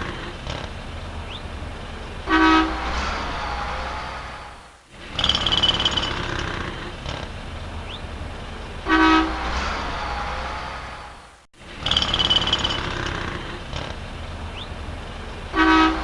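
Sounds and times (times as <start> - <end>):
rumble of passing vehicles: 0.0 - 16.0
car horn honking: 2.3 - 3.0, 8.9 - 9.6, 15.6 - 16.0.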